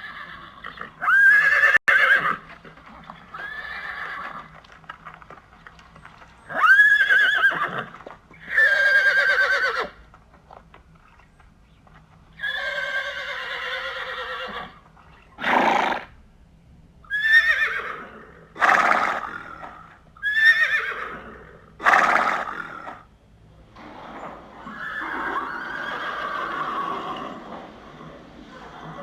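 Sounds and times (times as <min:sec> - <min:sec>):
horse whinnying: 0:00.0 - 0:04.6, 0:06.5 - 0:10.0, 0:12.4 - 0:14.8, 0:15.4 - 0:16.1, 0:17.1 - 0:23.0, 0:23.8 - 0:29.0.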